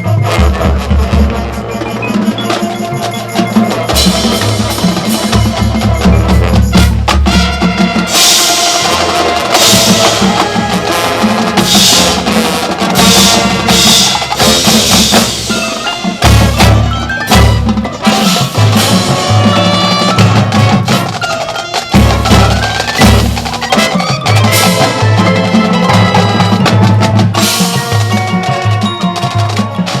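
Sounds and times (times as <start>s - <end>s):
marching band playing: 0.0s - 30.0s.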